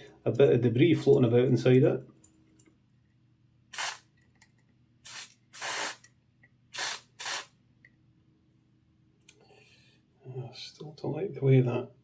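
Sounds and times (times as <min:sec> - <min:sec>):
aerosol spray hissing: 0:03.8 - 0:04.0, 0:05.1 - 0:06.0, 0:06.7 - 0:07.5.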